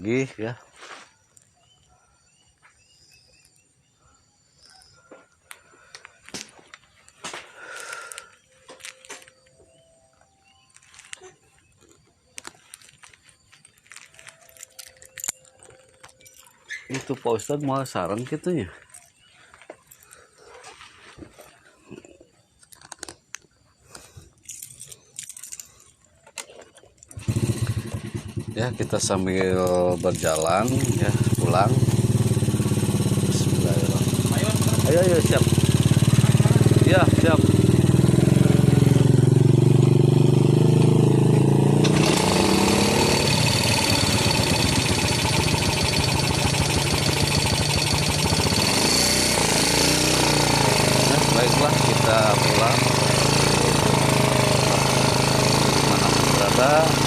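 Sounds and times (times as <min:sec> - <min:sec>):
metallic rattling and jingling: 0:12.7 - 0:19.3, 0:24.3 - 0:27.2, 0:29.0 - 0:32.9
motorcycle engine running: 0:27.1 - 0:57.0.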